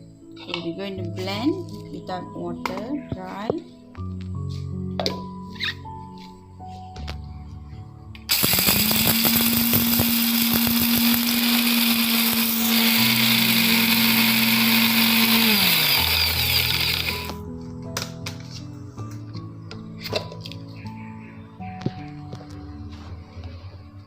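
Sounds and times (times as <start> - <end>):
blender motor whine: 8.3 - 17.4
seeds rattling in blender jar: 8.3 - 17.4.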